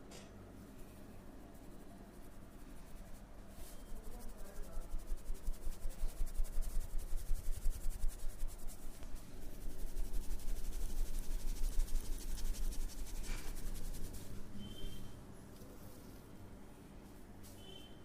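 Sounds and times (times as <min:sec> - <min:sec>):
hand massage strokes on skin: 0:00.7 - 0:15.0.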